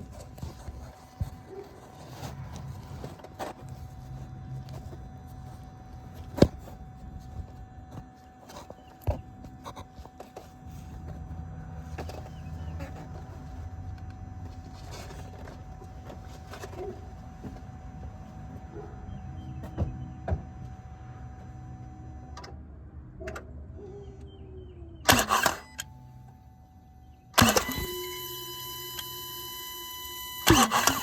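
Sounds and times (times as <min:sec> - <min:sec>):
engine cranking with starter: 0:25.1 - 0:26.0, 0:27.4 - 0:31.0
sharp clicks: 0:27.4 - 0:28.1.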